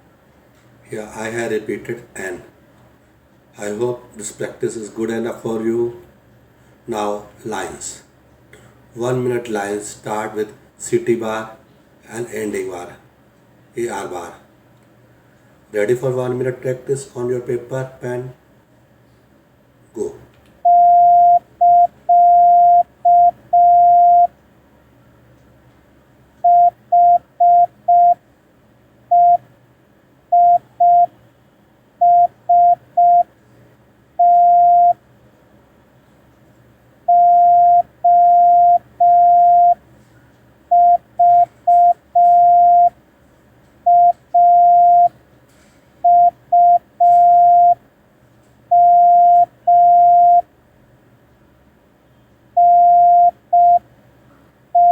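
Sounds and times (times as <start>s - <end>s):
morse code tone: 20.7s - 24.3s, 26.4s - 28.2s, 29.1s - 29.4s, 30.3s - 31.1s, 32.0s - 33.3s, 34.2s - 35.0s, 37.1s - 39.8s, 40.7s - 43.0s, 43.9s - 45.1s, 46.1s - 47.8s, 48.7s - 50.4s, 52.6s - 53.8s.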